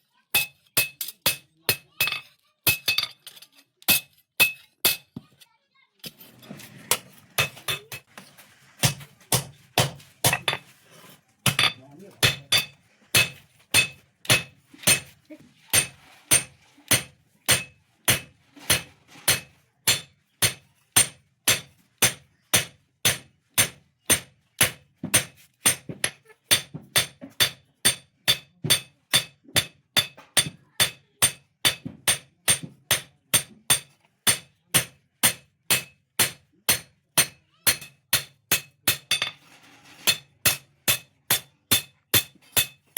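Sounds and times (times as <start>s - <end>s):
hammer striking steel on anvil: 0.4s - 3.2s, 3.9s - 5.2s, 11.5s - 15.1s, 15.7s - 39.4s, 40.0s - 42.9s.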